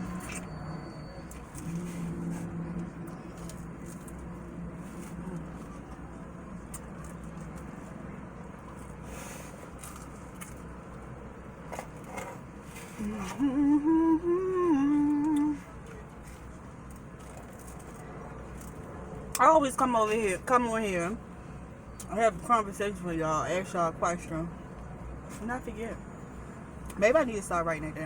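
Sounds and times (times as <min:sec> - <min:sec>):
low background hum: 0:00.0 - 0:28.0
woman humming: 0:13.0 - 0:15.7.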